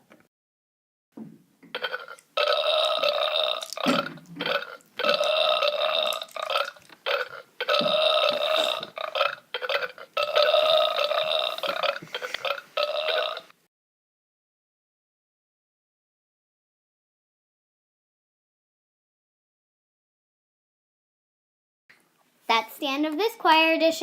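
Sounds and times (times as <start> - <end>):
drawn-out belches: 1.7 - 13.5.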